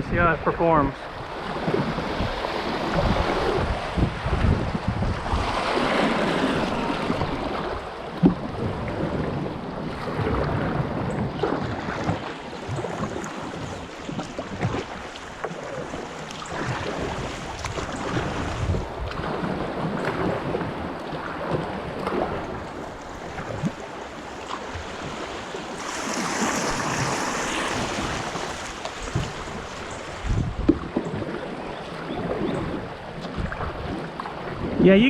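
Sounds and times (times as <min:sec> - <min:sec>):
wind buffeting microphone: 0:00.0 - 0:35.0
river current rushing: 0:04.9 - 0:08.0, 0:09.6 - 0:30.6.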